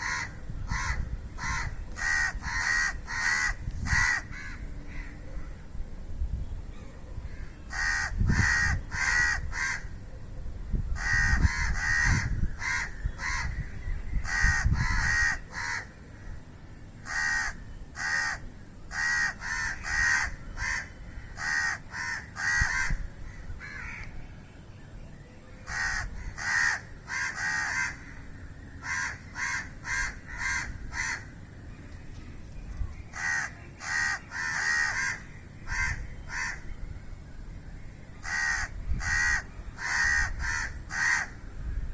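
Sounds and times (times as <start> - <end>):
crows cawing: 0.0 - 5.2, 7.3 - 9.9, 11.0 - 16.4, 17.0 - 24.1, 25.6 - 31.4, 33.1 - 36.7, 38.2 - 41.4.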